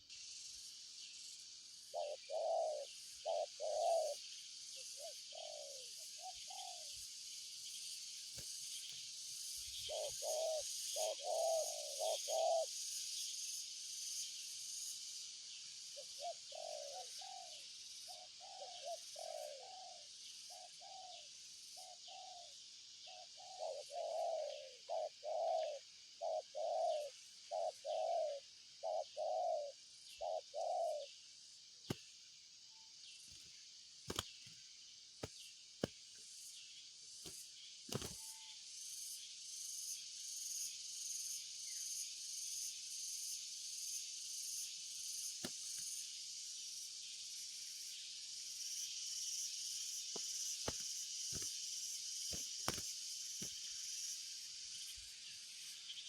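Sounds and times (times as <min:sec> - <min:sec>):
high insect buzz: 0:00.0 - 0:20.9, 0:23.1 - 0:56.0
dove cooing: 0:01.9 - 0:04.2, 0:05.0 - 0:06.9, 0:09.8 - 0:12.7, 0:16.2 - 0:17.6, 0:18.2 - 0:21.2, 0:23.1 - 0:31.1.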